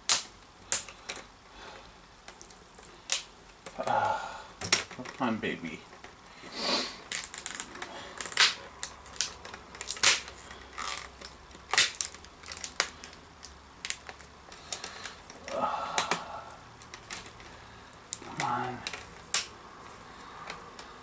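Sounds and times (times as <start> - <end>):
plastic clips clicking and snapping: 0.0 - 1.3, 7.1 - 16.2, 16.8 - 19.6.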